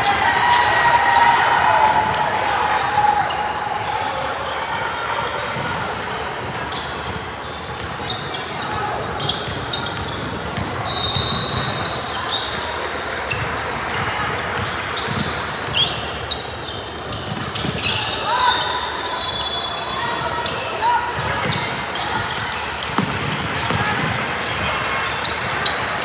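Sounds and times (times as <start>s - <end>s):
voices in a large hall: 0.0s - 26.0s
basketball bouncing on gym floor: 21.2s - 24.6s.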